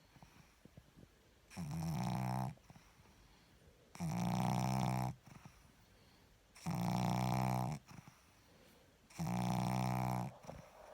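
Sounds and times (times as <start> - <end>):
dog snoring: 1.5 - 3.0, 3.9 - 5.7, 6.6 - 8.4, 9.1 - 10.9.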